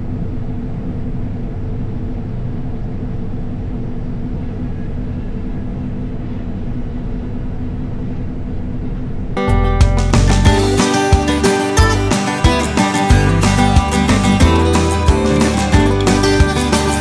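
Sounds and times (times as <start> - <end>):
country guitar music: 9.4 - 17.0.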